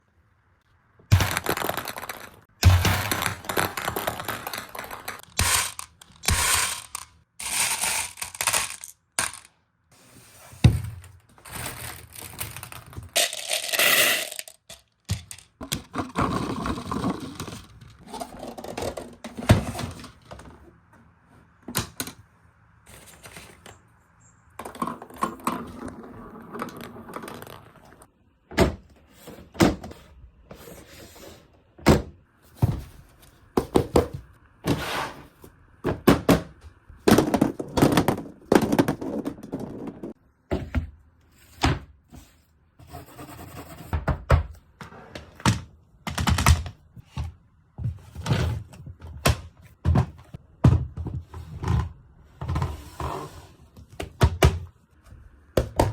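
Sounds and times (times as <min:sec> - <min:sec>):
balls rolling: 0:01.0 - 0:09.5, 0:10.7 - 0:21.6, 0:22.9 - 0:28.3, 0:32.5 - 0:40.7
balls clattering through marble run: 0:01.2 - 0:09.5, 0:11.7 - 0:17.8, 0:24.6 - 0:28.1, 0:37.1 - 0:40.2.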